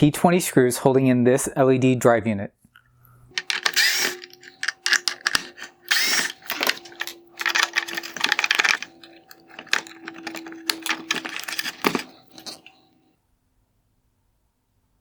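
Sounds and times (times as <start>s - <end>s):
screwdriver clicking and scraping: 3.3s - 12.8s.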